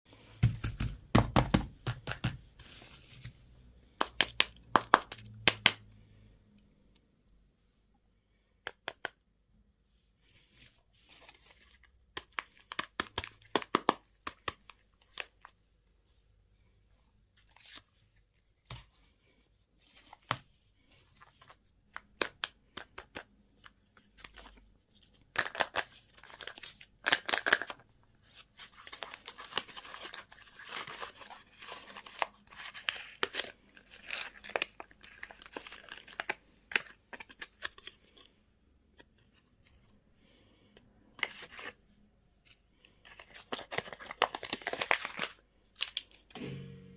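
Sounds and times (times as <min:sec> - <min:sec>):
plastic packaging crinkling: 0:28.7 - 0:38.3, 0:43.0 - 0:46.2.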